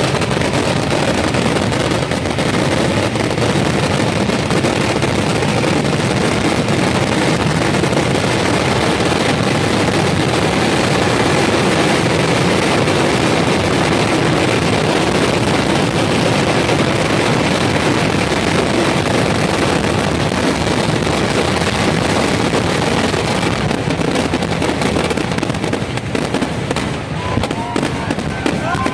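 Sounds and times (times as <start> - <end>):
firecrackers going off rapidly: 0.0 - 28.9.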